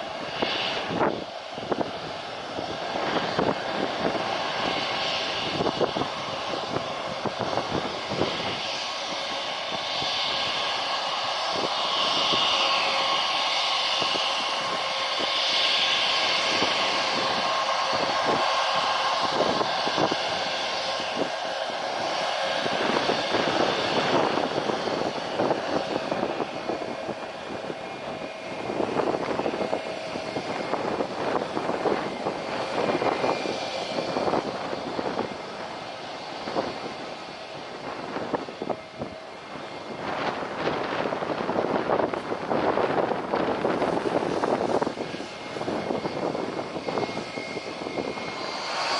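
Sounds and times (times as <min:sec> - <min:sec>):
jet engines whining and rumbling: 0:00.0 - 0:48.9.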